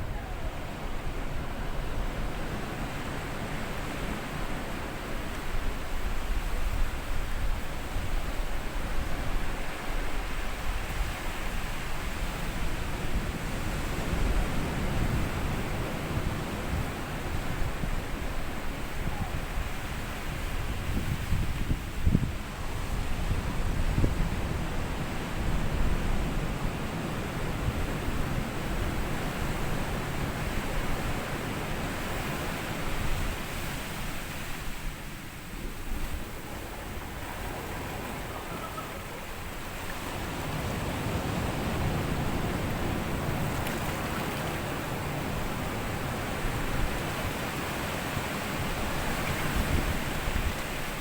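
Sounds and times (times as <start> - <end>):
sea waves washing onto beach: 24.3 - 51.0.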